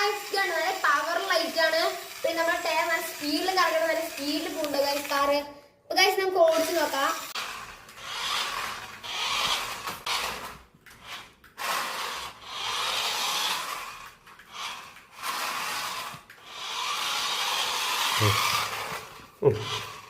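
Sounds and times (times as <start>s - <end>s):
toy car motor whirring: 0.0s - 20.0s
wheels rubbing on floor: 6.4s - 20.0s.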